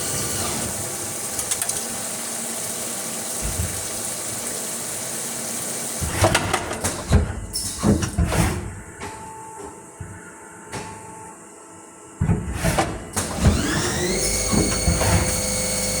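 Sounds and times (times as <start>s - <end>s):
lathe spindle whine: 0.0s - 6.1s, 13.5s - 16.0s
lathe knocks and clatter: 0.1s - 9.2s, 12.2s - 16.0s.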